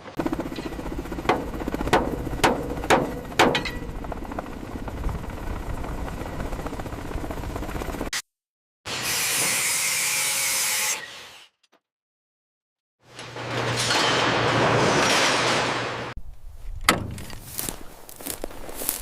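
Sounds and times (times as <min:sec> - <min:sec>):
helicopter pulsing drone: 0:00.1 - 0:08.1
sharp knocks: 0:00.3 - 0:04.0.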